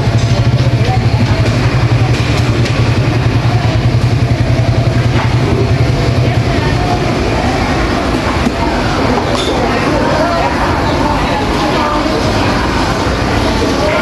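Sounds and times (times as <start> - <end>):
small motorbike engine running: 0.0 - 14.0
street clatter: 0.0 - 14.0.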